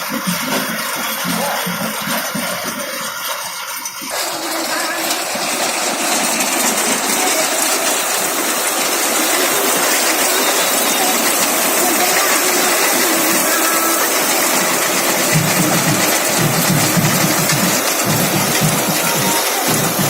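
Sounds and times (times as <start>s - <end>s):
engine running: 0.0s - 20.0s
straw baler clattering: 0.0s - 20.0s.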